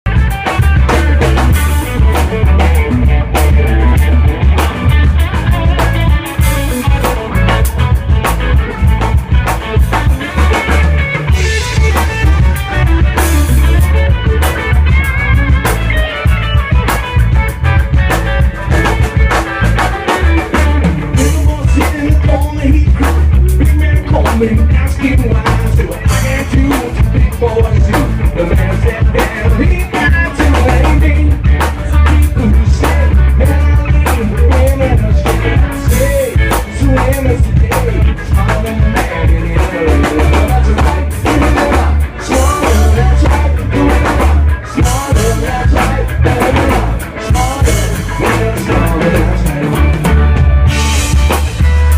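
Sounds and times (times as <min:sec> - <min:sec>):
rock music with drums and guitar: 0:00.0 - 0:51.9.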